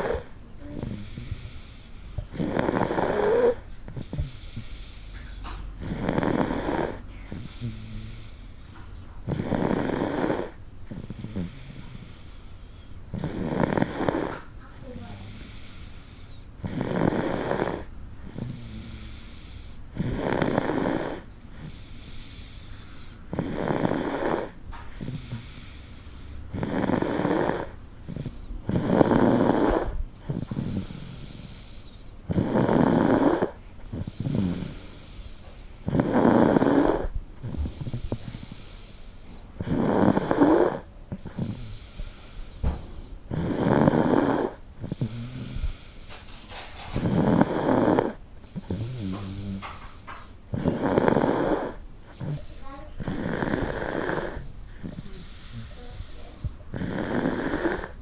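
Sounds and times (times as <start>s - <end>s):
toddler snoring: 0.0s - 42.7s, 43.3s - 58.0s.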